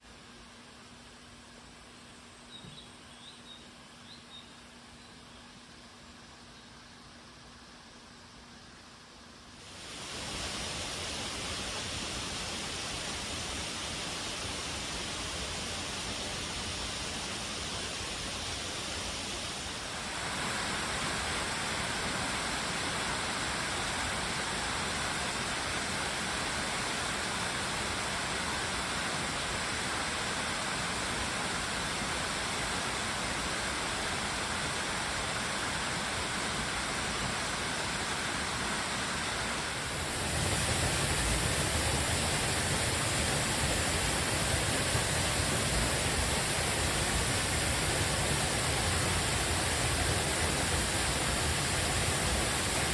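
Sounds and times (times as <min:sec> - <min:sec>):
waterfall rushing: 0:19.6 - 0:52.9.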